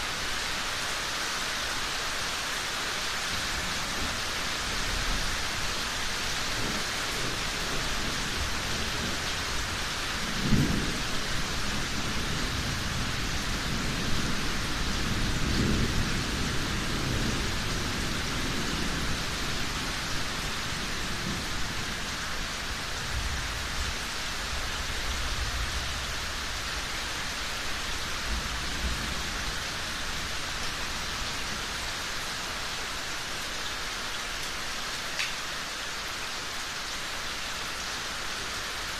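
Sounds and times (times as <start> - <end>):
heavy rain: 0.0 - 38.9
rolling thunder rumble: 6.6 - 22.1.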